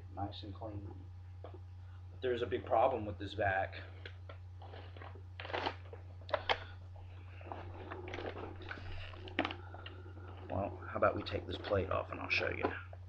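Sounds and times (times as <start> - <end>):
steady low hum: 0.0 - 13.0
vacuum cleaner being handled: 7.4 - 9.9.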